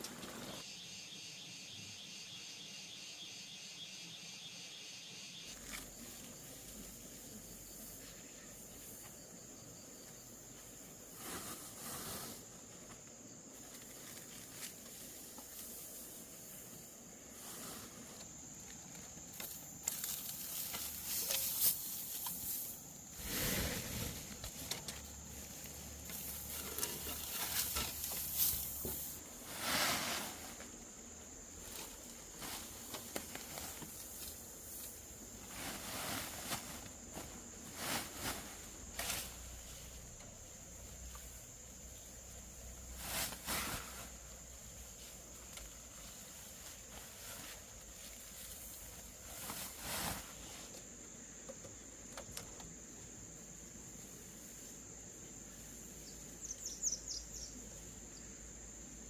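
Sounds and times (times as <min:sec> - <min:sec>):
rustling: 0:10.5 - 0:51.1.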